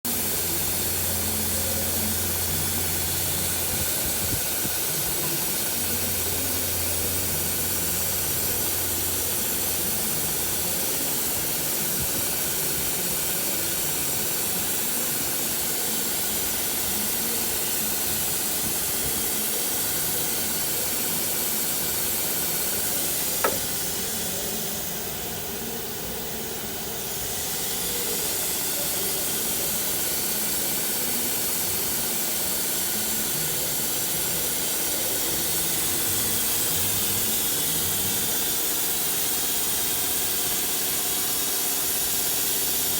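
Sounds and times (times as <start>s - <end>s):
machine hiss: 0.1s - 42.9s
sharp click: 23.4s - 23.8s.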